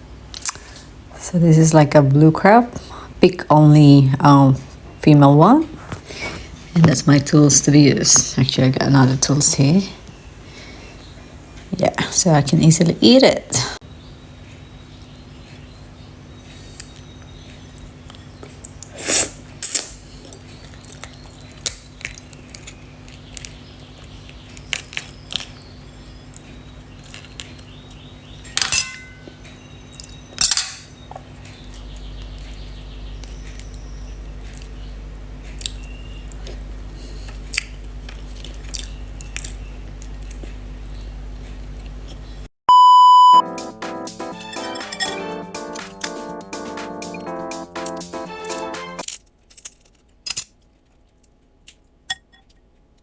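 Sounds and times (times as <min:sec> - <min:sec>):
chewing: 0:20.2 - 0:25.6, 0:26.2 - 0:28.1, 0:31.1 - 0:42.2
loud beep tone: 0:42.7 - 0:43.6.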